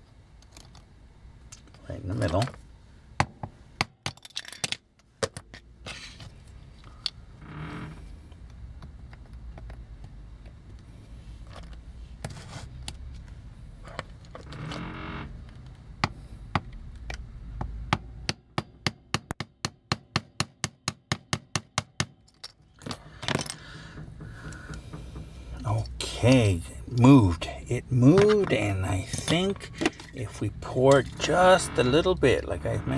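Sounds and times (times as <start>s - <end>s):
metal tools and parts clinking: 4.2s - 4.8s, 28.0s - 31.3s.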